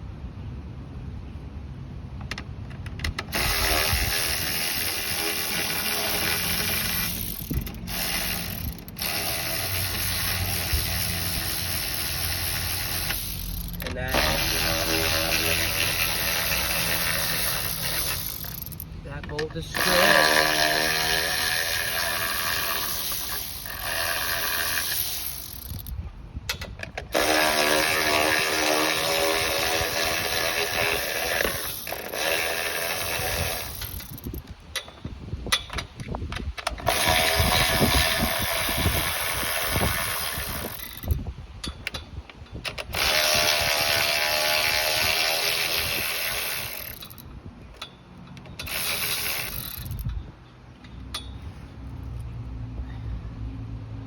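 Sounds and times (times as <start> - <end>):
power tool running: 3.1 - 25.9, 27.0 - 34.4, 36.8 - 41.2, 42.7 - 47.2, 48.6 - 50.0.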